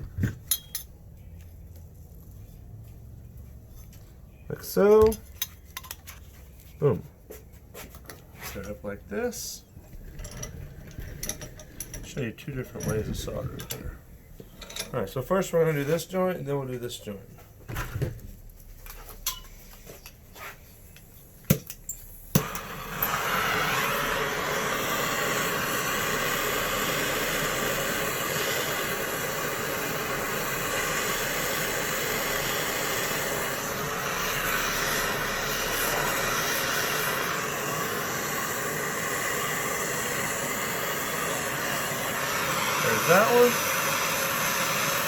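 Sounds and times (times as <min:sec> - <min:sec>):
gas torch hissing: 0:08.3 - 0:14.1, 0:20.3 - 0:45.0.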